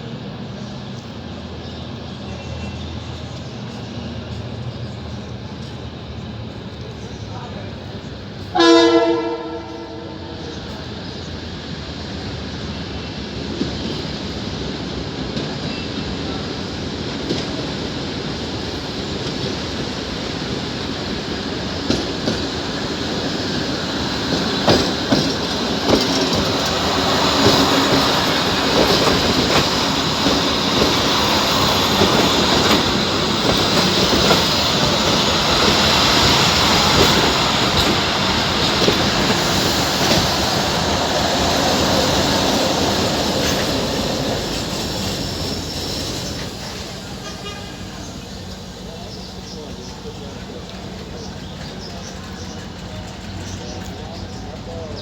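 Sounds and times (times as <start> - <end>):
train wheels clacking over rail joints: 16.6 - 55.0.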